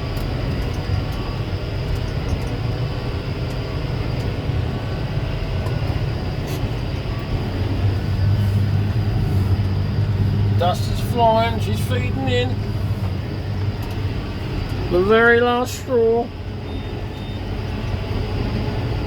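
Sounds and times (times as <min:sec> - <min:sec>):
combine harvester drone: 0:00.0 - 0:19.0
faint rattling clicks: 0:13.0 - 0:14.8.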